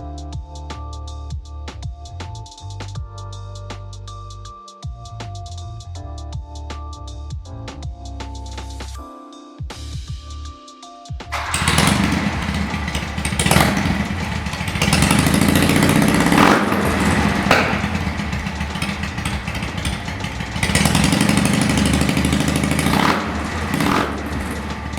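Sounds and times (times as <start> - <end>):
motorcycle engine revving: 11.3 - 24.9.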